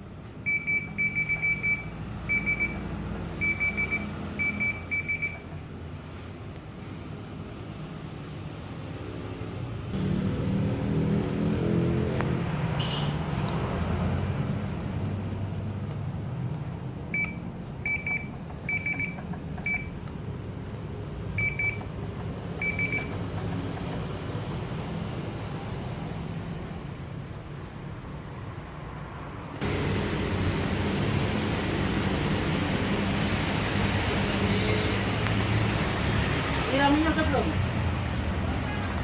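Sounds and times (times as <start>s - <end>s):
short electronic beeps: 0.5s - 2.8s, 3.4s - 5.5s, 17.2s - 20.0s, 21.4s - 21.9s, 22.6s - 23.2s.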